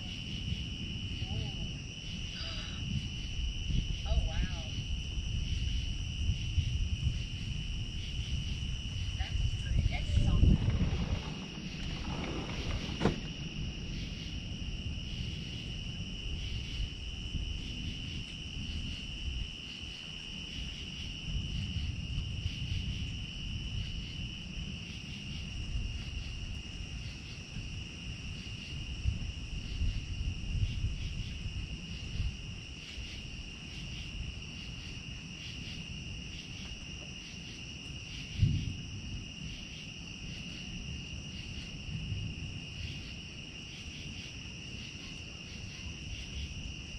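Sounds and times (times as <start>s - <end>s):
low rumble: 0.0s - 18.8s
crickets chirping: 0.0s - 46.9s
thump: 10.6s - 13.4s.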